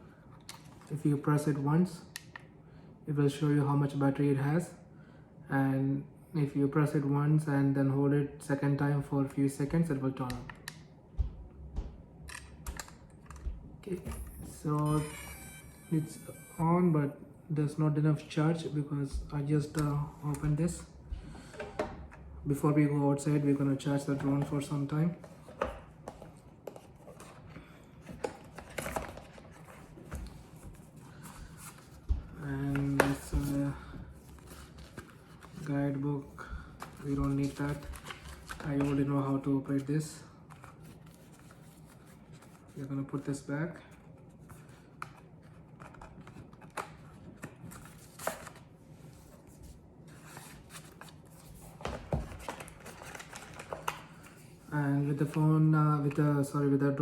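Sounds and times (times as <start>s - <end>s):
hands handling paper and cardboard: 36.8s - 39.1s, 44.0s - 54.6s
packaging rustling: 50.3s - 54.6s.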